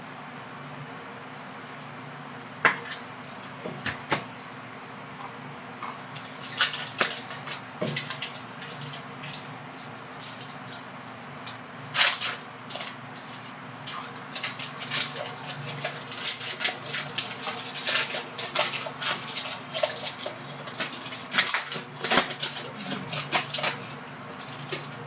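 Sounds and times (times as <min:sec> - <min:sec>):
papery rustles: 0:11.9 - 0:25.0.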